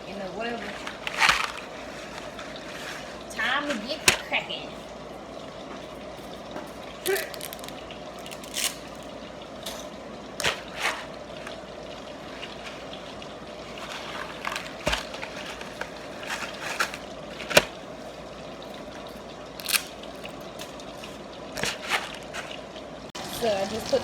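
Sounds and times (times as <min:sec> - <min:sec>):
chicken frying in hot oil: 0:00.0 - 0:24.0
kitchen utensils clicking and knocking: 0:00.5 - 0:04.4, 0:13.7 - 0:17.8.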